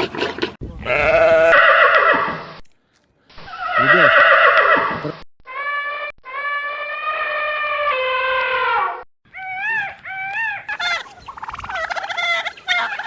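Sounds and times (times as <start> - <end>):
high animal call: 0.7 - 2.1, 3.6 - 4.9, 9.3 - 13.0
turkey gobbling: 9.3 - 13.0.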